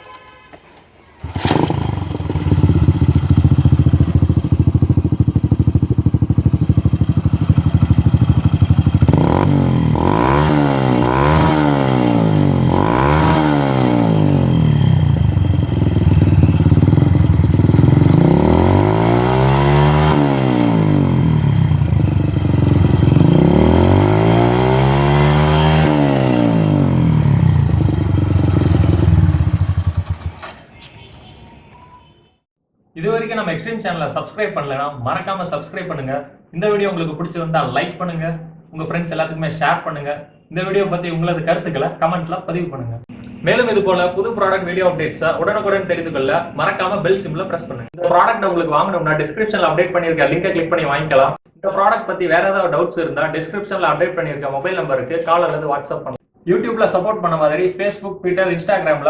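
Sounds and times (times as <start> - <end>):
motorcycle engine revving: 1.2 - 31.2.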